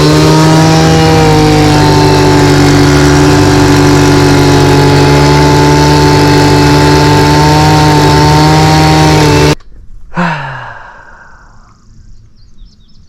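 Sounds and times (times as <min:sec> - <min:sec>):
engine humming steadily: 0:00.0 - 0:09.6.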